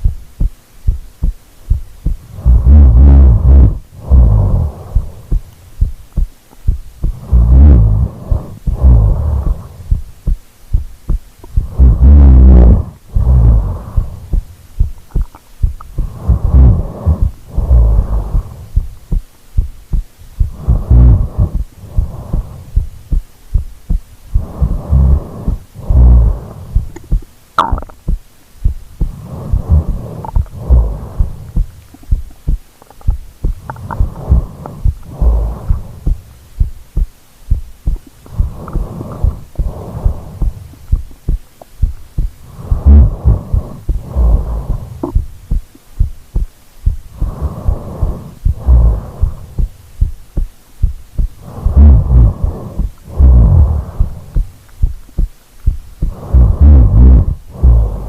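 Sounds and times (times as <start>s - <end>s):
loud rattling snores: 2.3s - 5.1s, 7.2s - 9.8s, 11.7s - 14.2s, 16.0s - 18.6s, 20.5s - 22.6s, 24.4s - 26.6s, 42.5s - 45.1s, 51.4s - 54.3s, 56.1s - 58.0s.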